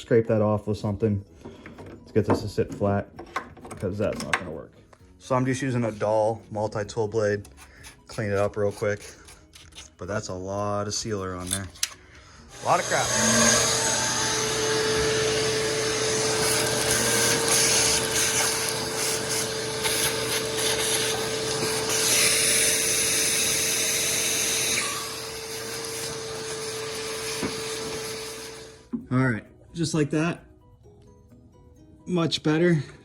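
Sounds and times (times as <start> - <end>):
blade scraping sealer: 7.5 - 10.1, 12.6 - 28.7
multi-tool motor hum: 12.5 - 28.9.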